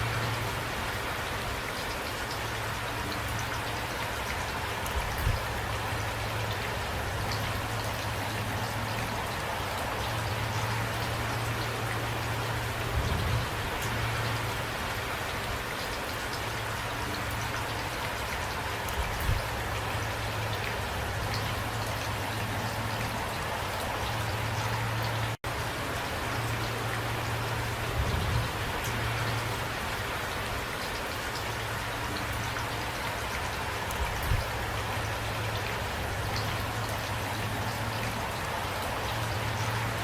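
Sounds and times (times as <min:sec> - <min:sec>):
raindrops ticking: 0:00.0 - 0:40.0
steady rain: 0:00.0 - 0:40.0.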